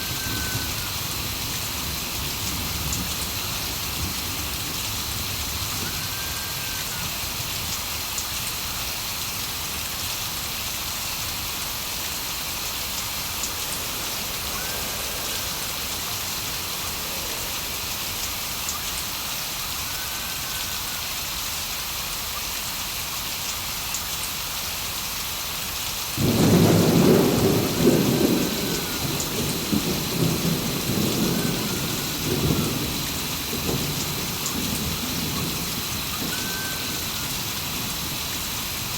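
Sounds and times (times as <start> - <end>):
thunder rumble: 0.0 - 7.6, 10.7 - 20.7, 26.2 - 38.9
heavy rain falling: 0.0 - 38.9.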